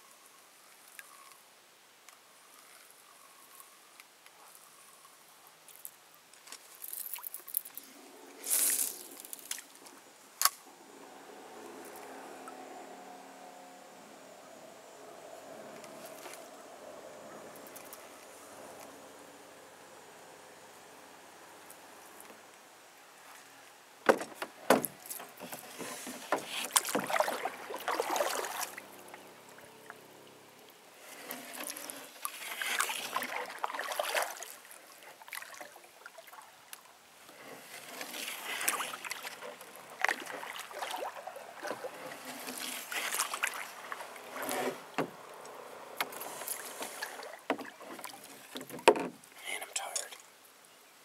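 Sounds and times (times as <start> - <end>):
paddle swishing through water: 6.9 - 19.0, 24.1 - 36.6, 37.2 - 49.8
sharp knocks: 24.0 - 25.0.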